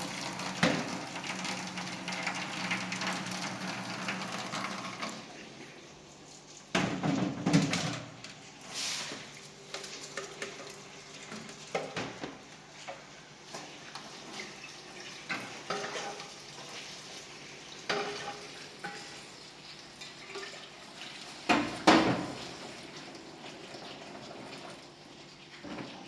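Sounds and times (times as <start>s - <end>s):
pots and pans clattering: 0.0s - 5.1s, 6.7s - 8.4s, 9.0s - 16.9s, 17.8s - 19.4s, 21.4s - 22.9s.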